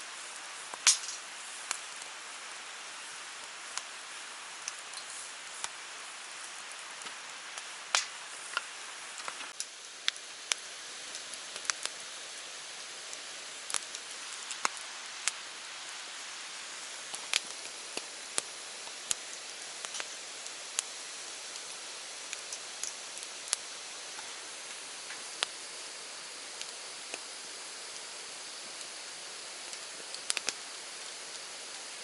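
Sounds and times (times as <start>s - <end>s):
sharp crackles and clicks: 0.2s - 32.0s.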